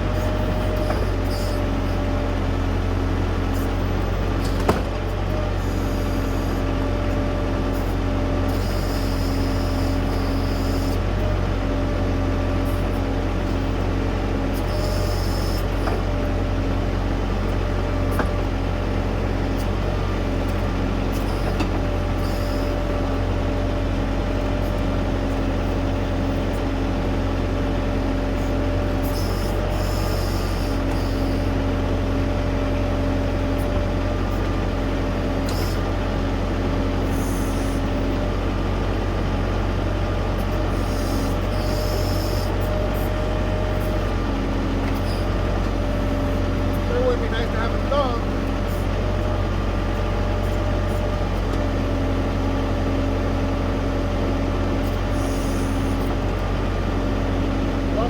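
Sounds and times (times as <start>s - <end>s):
hydraulic hum: 0.0s - 58.0s
tractor diesel engine running: 0.0s - 58.0s.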